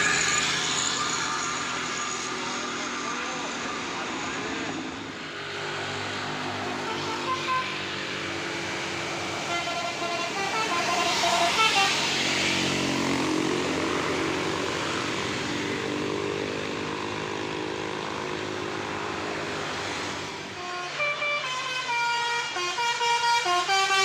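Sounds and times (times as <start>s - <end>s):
multi-tone bus horn melody: 6.8s - 8.0s, 9.1s - 12.6s, 20.5s - 24.0s.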